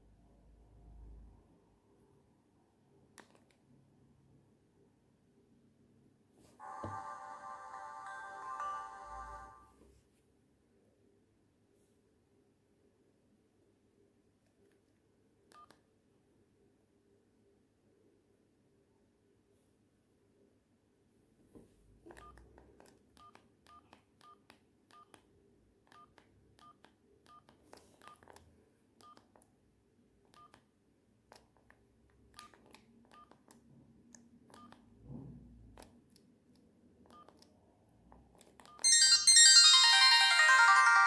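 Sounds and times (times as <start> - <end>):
ringtone melody: 6.6 - 9.8, 38.8 - 41.0
high key beeps: 38.8 - 41.0.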